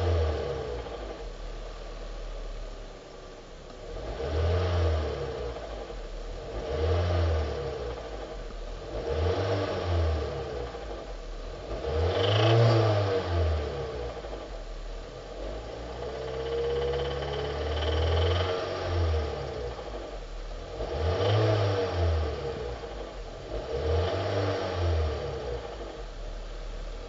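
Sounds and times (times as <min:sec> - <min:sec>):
car engine revving: 0:00.0 - 0:27.0
engine knocking: 0:16.0 - 0:18.8.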